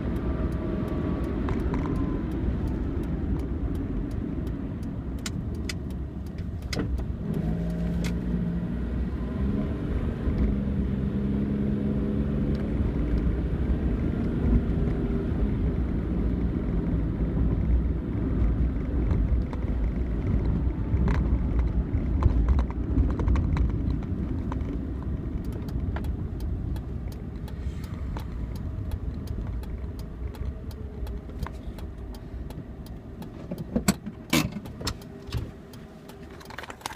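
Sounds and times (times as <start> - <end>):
car engine and road rumble: 0.0 - 36.9
sharp clicks: 0.2 - 8.2.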